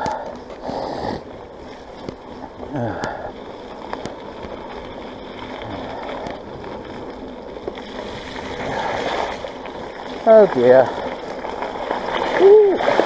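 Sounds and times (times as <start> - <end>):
bike clicks and knocks: 0.0 - 8.6
tyre and wind noise: 0.0 - 13.0.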